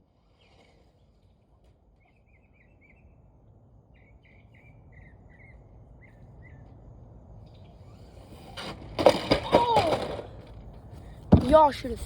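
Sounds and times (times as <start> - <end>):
small bird chirping: 0.2 - 6.8.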